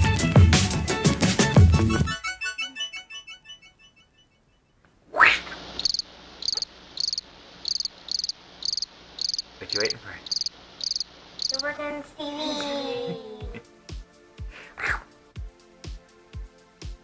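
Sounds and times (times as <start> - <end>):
cricket chirping: 5.8 - 11.8.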